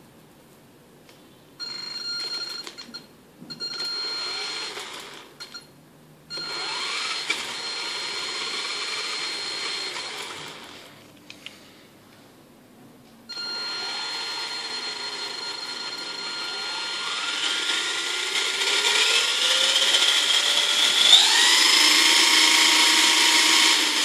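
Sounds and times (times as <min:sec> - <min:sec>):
rc car electric motor whine: 0:04.0 - 0:05.3, 0:06.4 - 0:11.0, 0:13.4 - 0:24.0.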